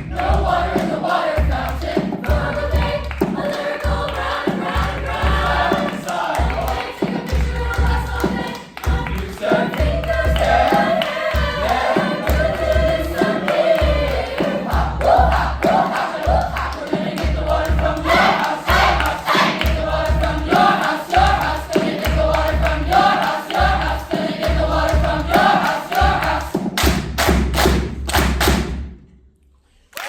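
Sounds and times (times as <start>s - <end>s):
low drum thumps: 0.0s - 16.7s, 17.3s - 29.0s
choir singing: 0.0s - 26.6s
sharp drum hits: 24.5s - 29.1s.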